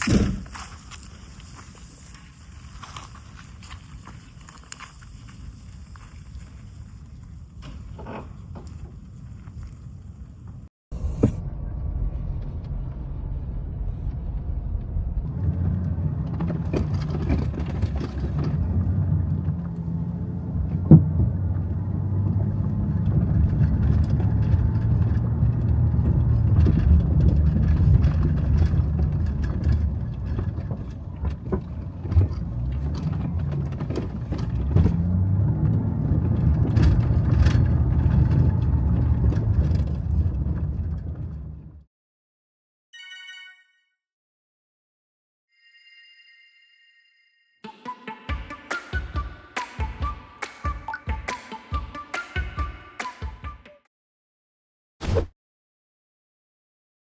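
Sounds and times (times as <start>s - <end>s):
vehicle engine and road rumble: 0.0s - 41.9s
sharp knock: 11.0s - 11.4s, 55.0s - 55.3s.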